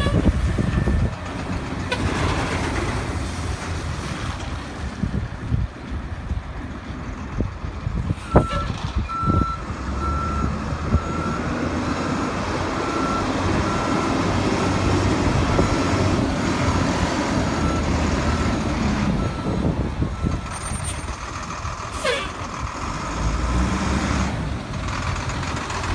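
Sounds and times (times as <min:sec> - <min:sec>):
truck engine running: 0:00.0 - 0:25.9
reversing alarm beeps: 0:08.3 - 0:11.5.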